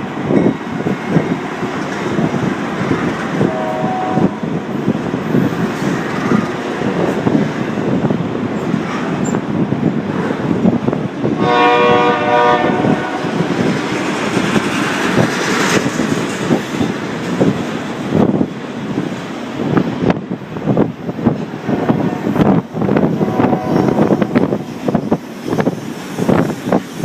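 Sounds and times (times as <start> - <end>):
freight train rumbling past: 0.0 - 27.0
locomotive horn: 3.4 - 4.6, 11.4 - 13.5, 23.2 - 24.6.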